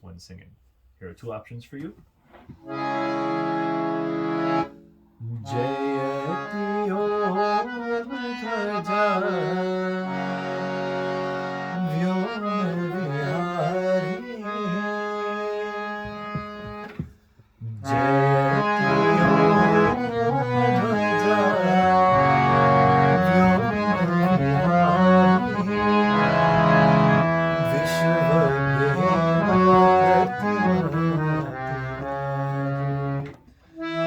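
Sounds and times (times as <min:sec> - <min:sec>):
harmonium playing chords: 0:02.6 - 0:34.0
person singing: 0:05.2 - 0:10.5, 0:11.8 - 0:16.8, 0:17.6 - 0:32.1.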